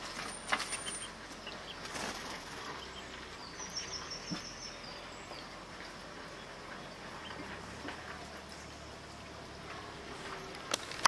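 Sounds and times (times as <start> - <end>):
high bird chirps: 0.2 - 5.5
birds fluttering wings: 1.8 - 2.8.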